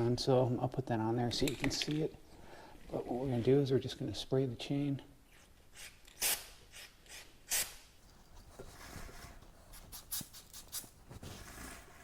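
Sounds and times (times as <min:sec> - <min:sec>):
aerosol spray hissing: 0:09.7 - 0:11.7.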